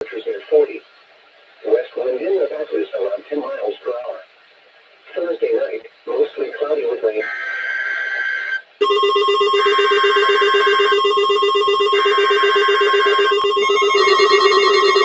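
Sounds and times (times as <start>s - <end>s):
steady high alarm tone: 8.8s - 15.0s
warbling two-tone data signal: 8.8s - 15.0s.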